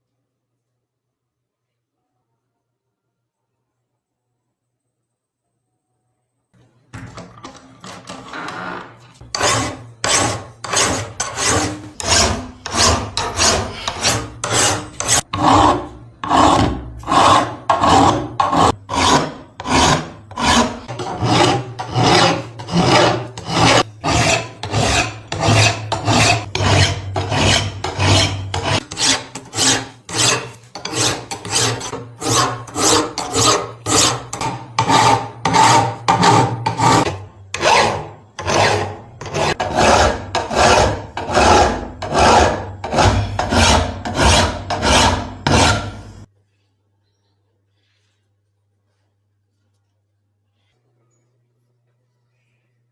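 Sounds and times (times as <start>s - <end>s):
file rasping strokes: 7.9s - 46.3s.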